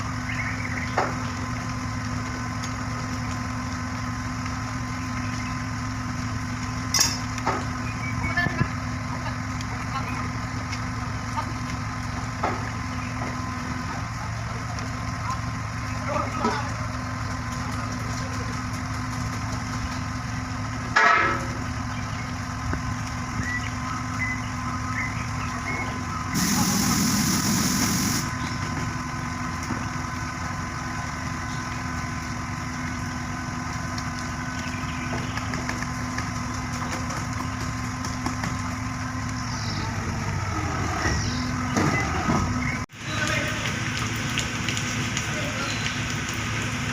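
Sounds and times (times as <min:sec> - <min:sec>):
truck engine idling: 0:00.0 - 0:46.9
hiss-like rush: 0:26.3 - 0:28.3.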